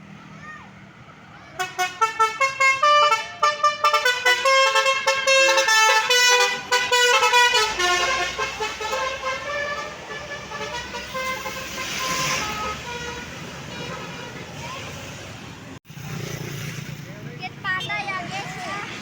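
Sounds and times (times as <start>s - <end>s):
musical air horn playing a tune: 1.6s - 14.4s.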